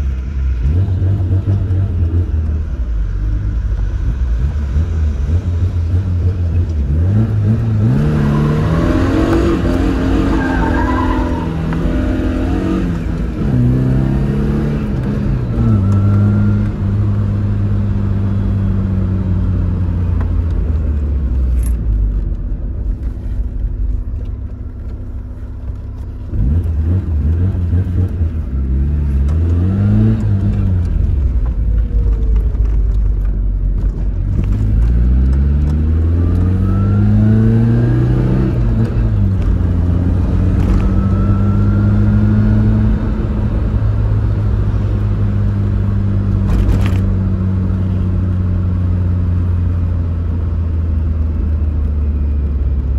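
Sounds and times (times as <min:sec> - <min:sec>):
car engine revving: 0:00.0 - 0:52.9
tyre squeal: 0:10.0 - 0:12.8, 0:40.4 - 0:42.6.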